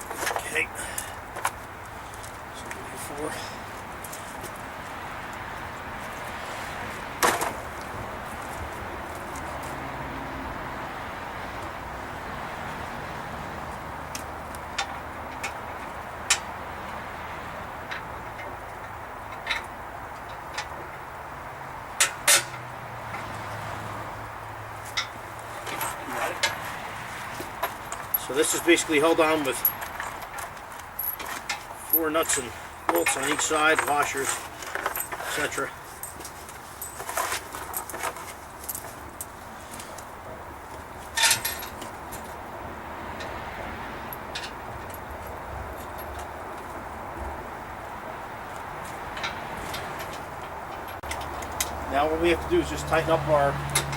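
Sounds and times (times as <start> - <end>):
metal clicks and knocks: 17.8 - 21.0, 22.0 - 23.4, 40.7 - 42.3, 48.5 - 51.9
metal hardware clicking and rattling: 17.8 - 21.0, 22.0 - 23.3, 24.8 - 26.7, 27.4 - 40.1, 41.1 - 42.4, 49.1 - 51.9.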